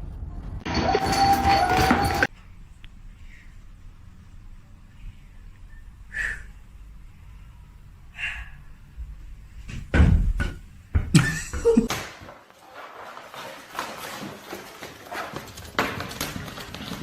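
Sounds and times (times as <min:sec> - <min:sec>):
bangs and clatter: 0:00.0 - 0:02.3
loud thumps and knocks: 0:09.7 - 0:12.2.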